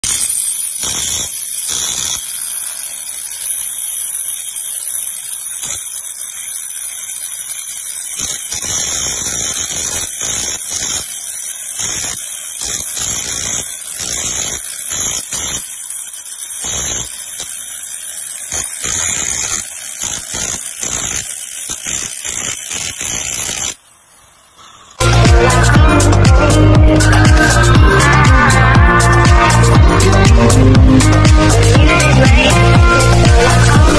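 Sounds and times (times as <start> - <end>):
high-speed power tool whining: 0.0 - 23.8.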